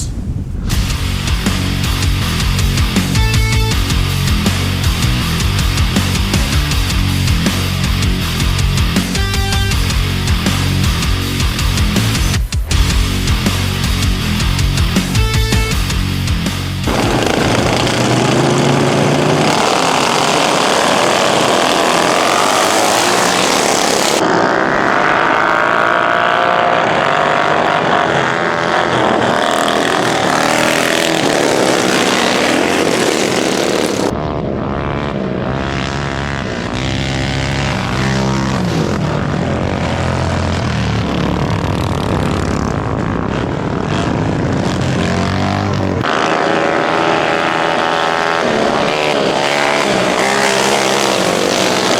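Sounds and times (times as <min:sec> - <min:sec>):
lawn mower engines revving: 0:00.0 - 0:34.1, 0:35.5 - 0:51.9.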